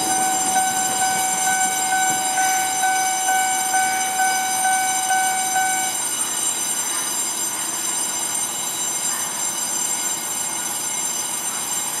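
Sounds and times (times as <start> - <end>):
train rushing past: 0.0 - 6.1
level-crossing warning bell: 0.0 - 12.0.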